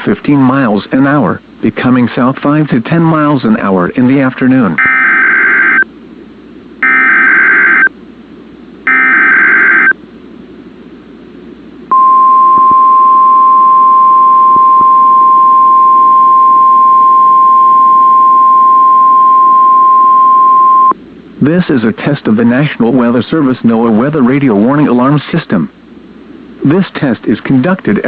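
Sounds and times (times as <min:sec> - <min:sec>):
buzzing data bursts: 0:04.8 - 0:05.8, 0:06.8 - 0:07.9, 0:08.9 - 0:09.9
steady warning alarm tone: 0:04.8 - 0:05.8, 0:06.8 - 0:07.9, 0:08.9 - 0:10.0.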